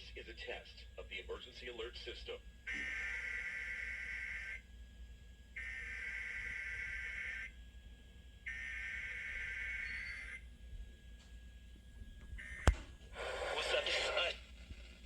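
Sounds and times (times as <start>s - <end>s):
faint steady whistle: 5.6s - 7.6s, 8.5s - 10.8s.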